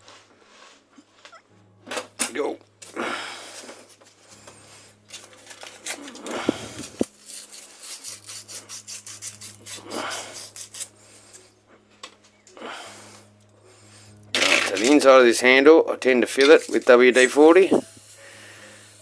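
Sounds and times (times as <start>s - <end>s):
sandpaper rubbing metal: 6.6s - 11.4s, 16.4s - 19.0s.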